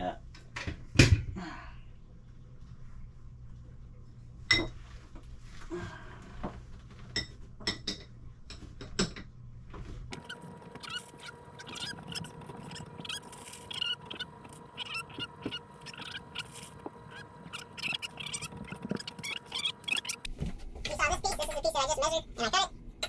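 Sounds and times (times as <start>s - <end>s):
steady hum: 0.0s - 23.0s
tiling squeaks: 10.1s - 20.3s.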